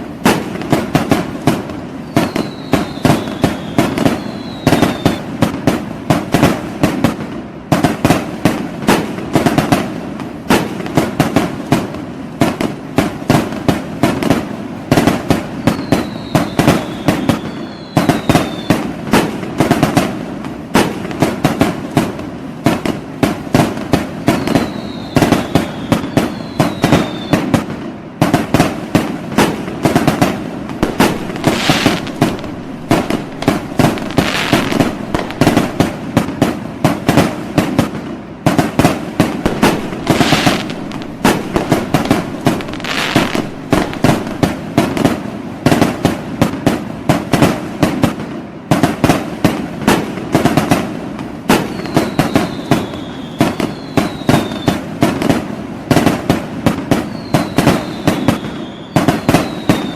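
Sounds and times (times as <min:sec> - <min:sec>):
fireworks bangs and pops: 0:00.0 - 0:59.9
falling firework whistles: 0:00.3 - 0:05.6, 0:14.3 - 0:20.1, 0:23.5 - 0:38.0, 0:38.6 - 0:45.9, 0:51.4 - 0:59.9.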